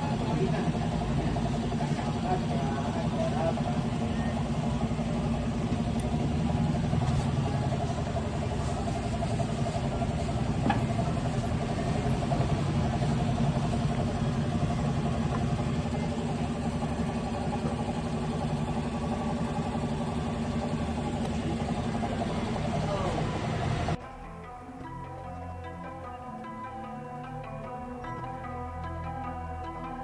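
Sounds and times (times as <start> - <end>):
scooter engine idling: 0.0 - 24.0.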